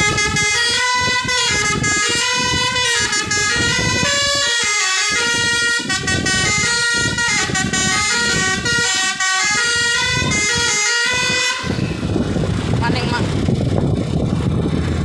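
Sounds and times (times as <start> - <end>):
multi-tone air horn melody: 0.0 - 12.0
low rumble: 5.1 - 15.0.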